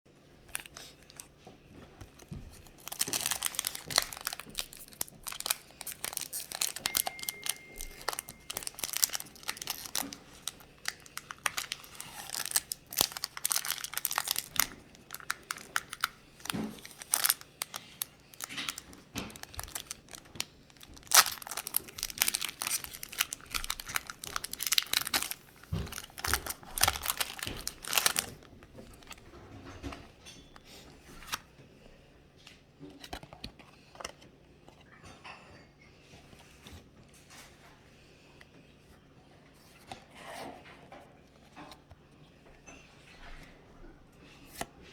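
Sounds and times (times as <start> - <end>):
foil wrapper crinkling and tearing: 2.1 - 29.2.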